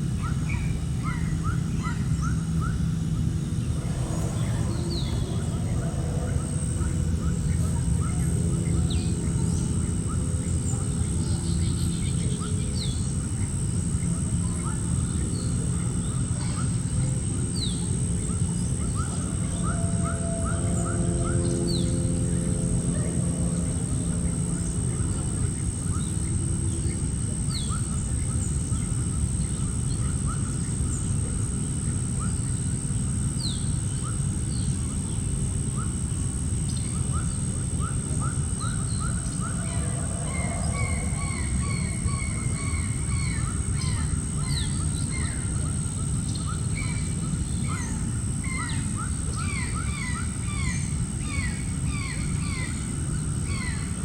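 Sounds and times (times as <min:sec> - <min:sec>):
constant high-pitched tone: 0:00.0 - 0:54.0
low background noise: 0:00.0 - 0:54.0
birds chirping: 0:03.3 - 0:13.0, 0:17.6 - 0:29.0, 0:37.3 - 0:45.6.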